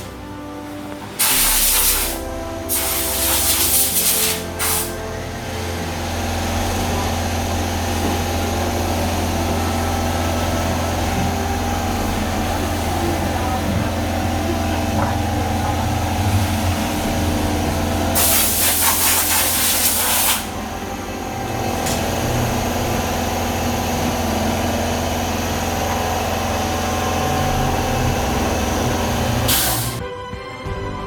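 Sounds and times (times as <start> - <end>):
workshop machine motor hum: 0.0 - 30.0
hissing air burst: 1.2 - 5.0, 18.1 - 20.6, 29.5 - 30.0.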